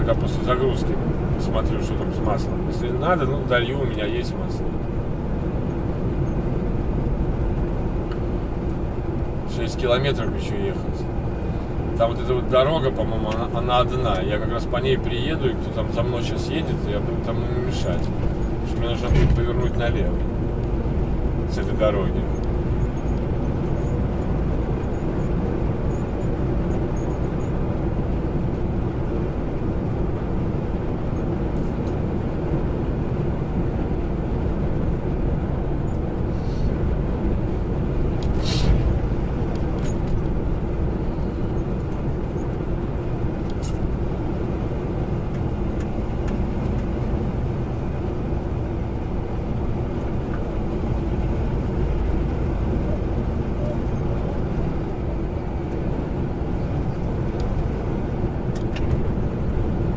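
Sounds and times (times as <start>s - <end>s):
road noise: 0.0s - 59.9s
truck engine drone: 0.0s - 59.9s.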